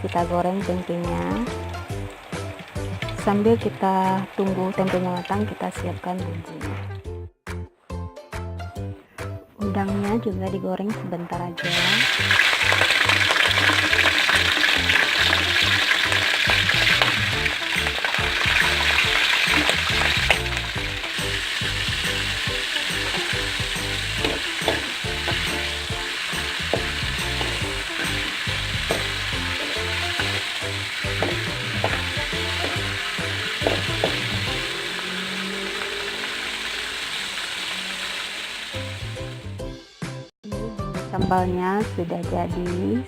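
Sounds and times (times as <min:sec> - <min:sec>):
shrimp sizzling in hot oil: 0:00.6 - 0:05.8, 0:11.6 - 0:39.6
oil pops and crackles: 0:11.6 - 0:38.8.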